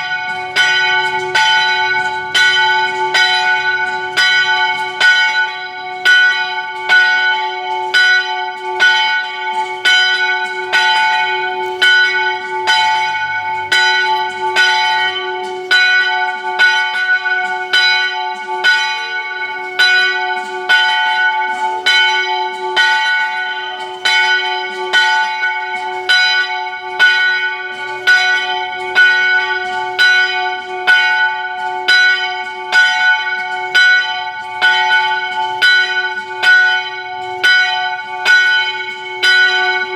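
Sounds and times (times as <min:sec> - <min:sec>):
church bell tolling: 0:00.0 - 0:39.9.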